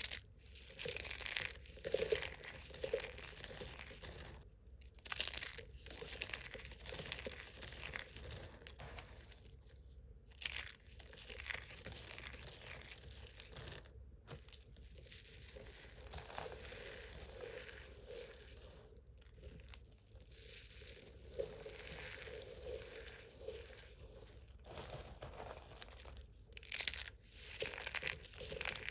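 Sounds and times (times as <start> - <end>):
dry soap crunching: 0.0 - 28.9.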